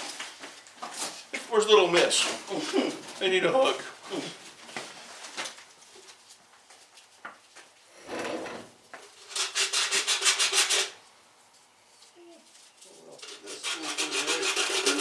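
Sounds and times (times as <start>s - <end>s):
rasping on metal: 9.3s - 11.0s, 13.2s - 15.0s.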